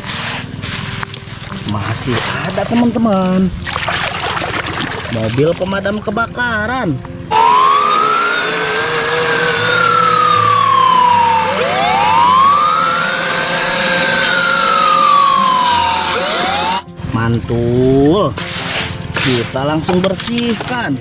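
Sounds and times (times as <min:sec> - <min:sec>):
fire engine siren wailing: 0:07.3 - 0:16.9.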